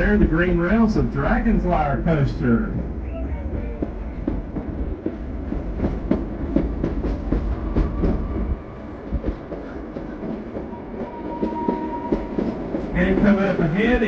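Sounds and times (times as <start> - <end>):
low train rumble: 0.0 - 14.0
train wheels clacking: 3.5 - 14.0.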